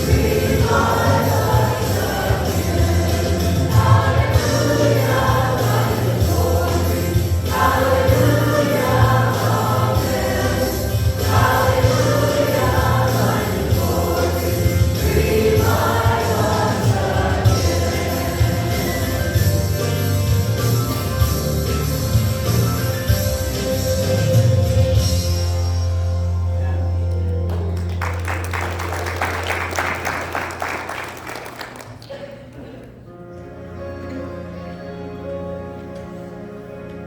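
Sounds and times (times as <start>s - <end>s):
group singing a hymn: 0.0s - 19.8s
steady bass accompaniment: 0.0s - 28.9s.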